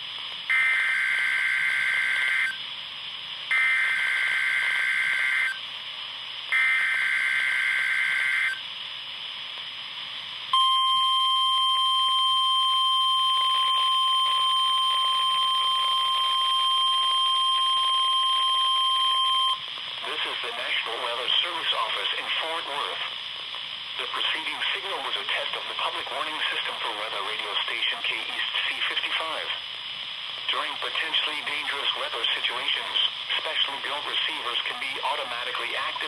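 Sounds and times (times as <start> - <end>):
steady warning alarm tone: 0.5 - 2.7, 3.5 - 5.6, 6.5 - 8.8, 10.5 - 22.6.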